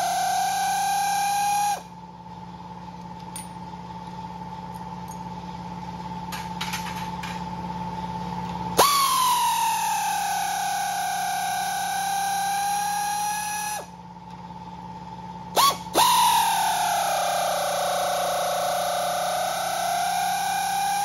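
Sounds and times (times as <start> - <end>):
air compressor motor whining: 0.0 - 21.0.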